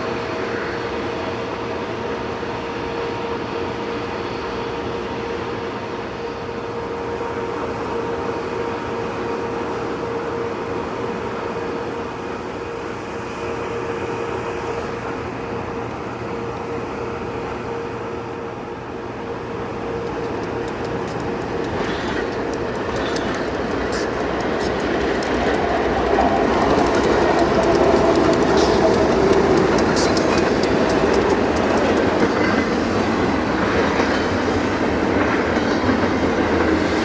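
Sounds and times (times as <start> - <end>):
constant hum: 0.0 - 36.8
train rumbling by: 0.0 - 37.0
wheel clicks on rail joints: 20.0 - 32.5.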